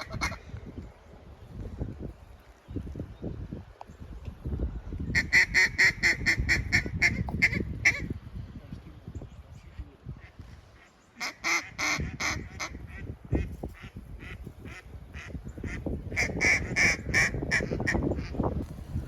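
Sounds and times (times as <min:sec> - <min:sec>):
duck quacking: 0:00.0 - 0:00.4, 0:10.2 - 0:18.0
low rumble of wind: 0:00.0 - 0:19.0.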